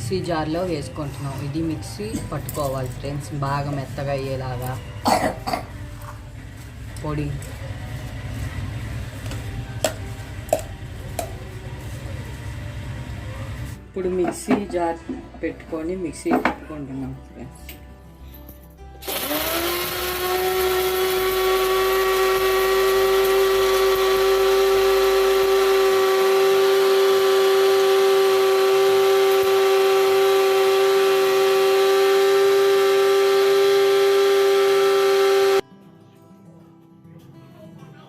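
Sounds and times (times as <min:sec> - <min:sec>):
mixer grinder motor whining: 0:19.0 - 0:35.6.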